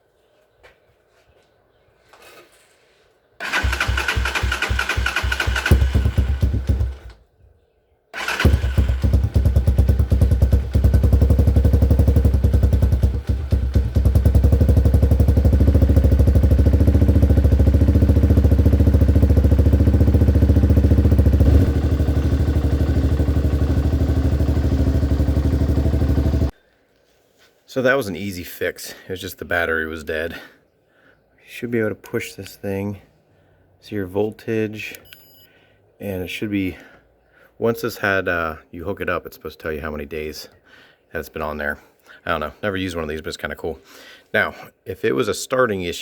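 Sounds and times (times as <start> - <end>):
dirt bike engine idling: 3.4 - 7.2, 8.2 - 26.5
starter motor whining: 3.4 - 7.2, 8.2 - 9.4.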